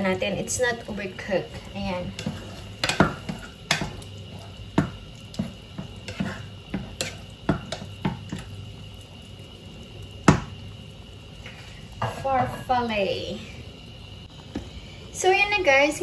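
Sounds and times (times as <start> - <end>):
utensil knocking against pot: 2.1 - 4.0, 4.7 - 8.5.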